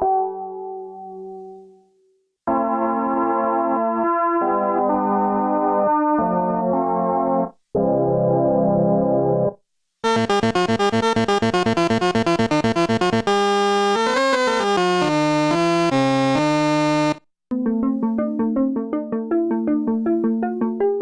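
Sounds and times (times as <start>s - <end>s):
synthesizer arpeggio: 10.0s - 17.2s
synthesizer chord: 10.0s - 17.2s
synthesizer lead melody: 10.0s - 17.2s.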